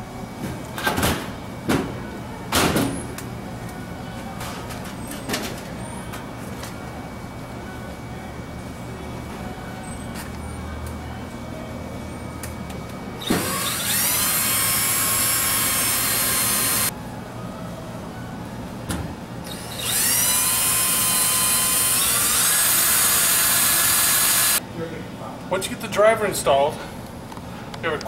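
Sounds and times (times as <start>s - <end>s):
power drill whining: 13.2s - 16.9s, 19.5s - 24.6s.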